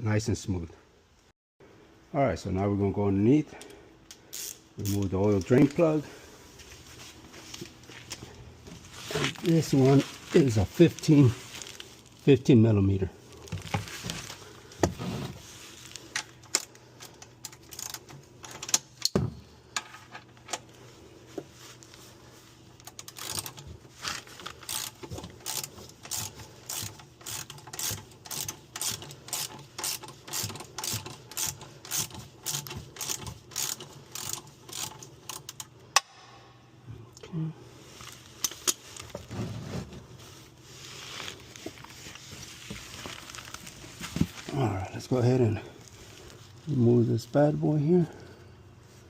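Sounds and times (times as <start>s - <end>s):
ratchet wrench clicking: 4.3s - 5.0s, 17.4s - 18.1s, 22.8s - 23.6s, 24.5s - 36.1s.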